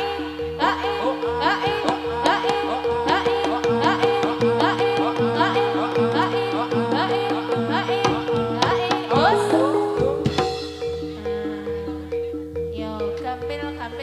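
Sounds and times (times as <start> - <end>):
ringing metallophone tones: 0.0 - 14.0
hand drum strokes: 1.4 - 11.8.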